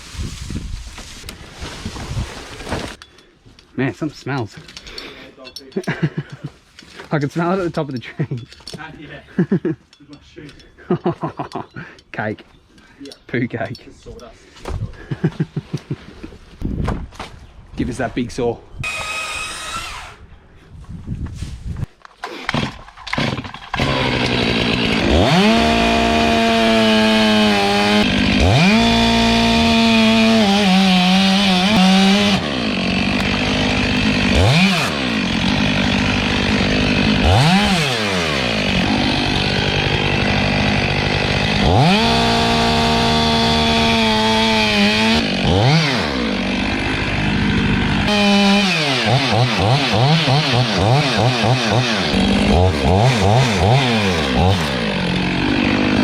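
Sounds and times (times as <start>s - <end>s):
chainsaw engine revving: 18.8s - 20.2s, 22.2s - 56.0s.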